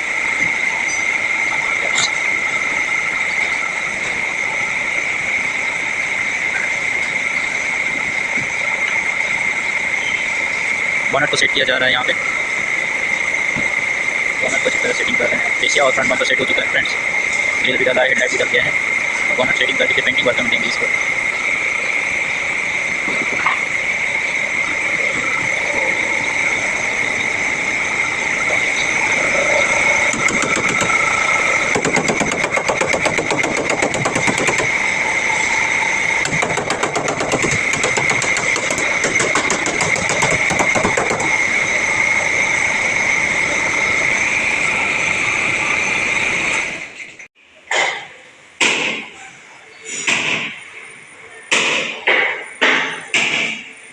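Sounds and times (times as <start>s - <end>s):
machinery high whine: 0.0s - 47.3s
fast rattle of impacts: 30.1s - 35.0s, 36.2s - 41.4s.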